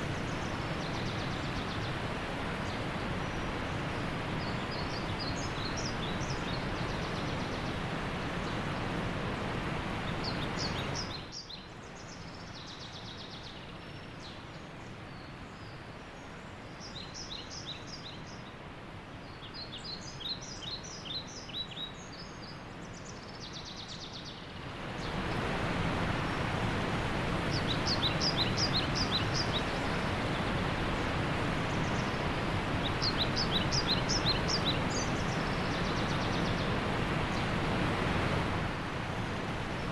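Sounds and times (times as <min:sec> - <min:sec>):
waterfall rushing: 0:25.0 - 0:39.9.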